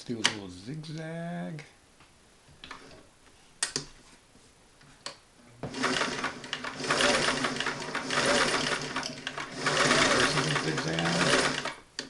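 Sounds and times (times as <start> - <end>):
sewing machine running fast: 5.7 - 11.8.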